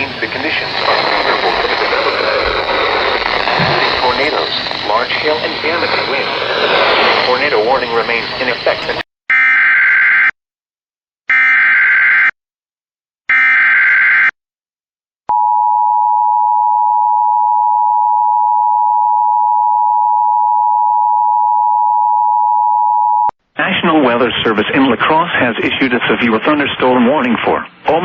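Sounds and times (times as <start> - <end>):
buzzy data bursts: 0.0 - 8.8.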